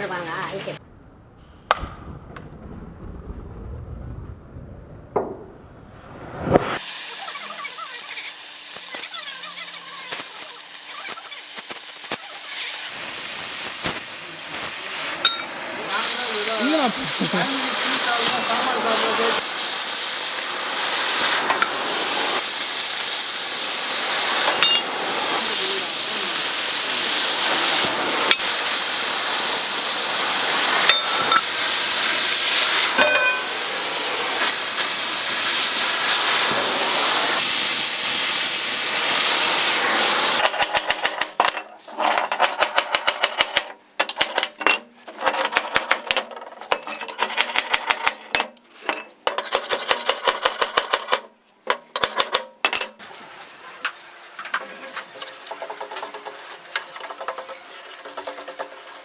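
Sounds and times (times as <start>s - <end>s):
gas cutting torch hissing: 6.6s - 40.4s
arc welding crackle: 6.7s - 41.2s, 53.0s - 57.7s.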